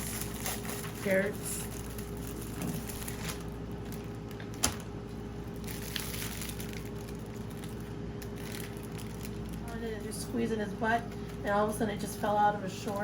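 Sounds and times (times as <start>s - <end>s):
faint rustling or crunching: 0.0s - 10.3s
appliance hum: 0.0s - 13.0s.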